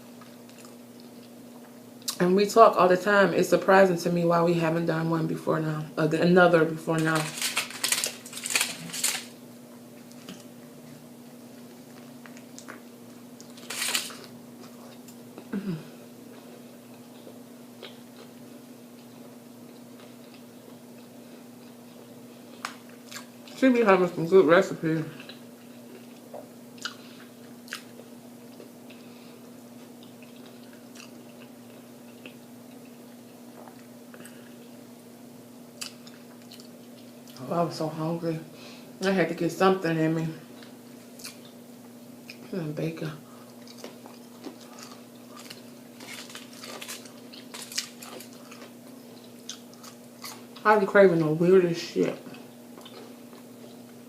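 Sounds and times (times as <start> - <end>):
faint steady hum: 0.0 - 54.0
chewing with mouth clicks: 25.2 - 29.1, 29.8 - 34.6, 43.4 - 50.6, 52.3 - 54.0.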